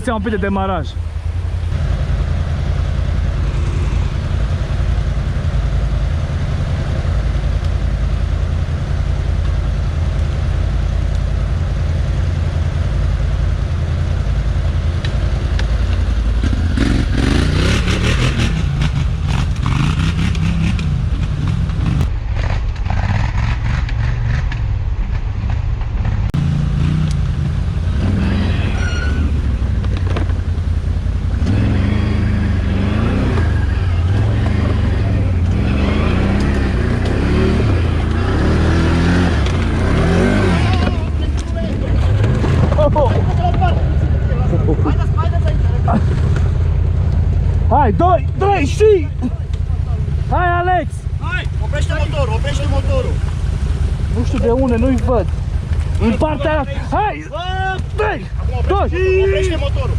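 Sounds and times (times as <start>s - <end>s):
atv engine revving: 0.0s - 24.7s, 25.6s - 59.9s
clatter: 15.0s - 26.4s.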